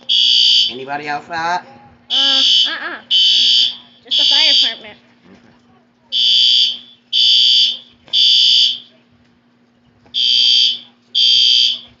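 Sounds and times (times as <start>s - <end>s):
fire alarm beeping: 0.0s - 0.9s, 2.1s - 4.9s, 6.1s - 9.0s, 10.2s - 12.0s.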